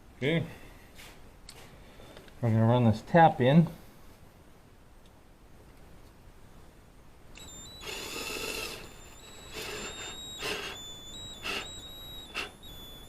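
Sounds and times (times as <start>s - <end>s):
power drill motor whine: 7.4s - 13.0s.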